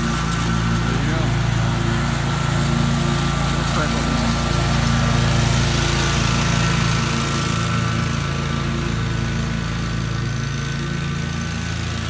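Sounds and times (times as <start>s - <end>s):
lawn mower engine running: 0.0s - 12.0s.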